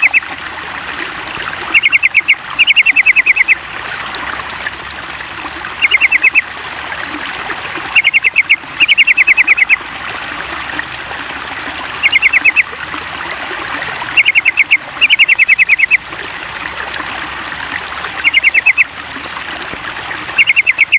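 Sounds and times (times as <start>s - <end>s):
bird calling in short high notes: 0.0s - 0.2s, 1.7s - 3.6s, 5.8s - 6.4s, 8.0s - 9.8s, 12.0s - 12.6s, 14.2s - 16.0s, 18.2s - 18.9s, 20.4s - 20.9s
trickle of running water: 0.0s - 20.9s.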